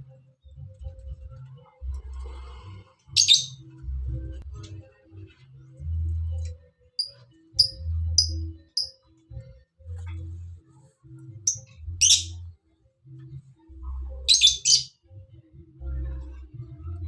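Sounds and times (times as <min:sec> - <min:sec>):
young songbird chirping: 0:03.2 - 0:03.6, 0:07.0 - 0:08.9, 0:11.5 - 0:12.4, 0:14.3 - 0:14.9
low pulsing bass: 0:13.3 - 0:14.3.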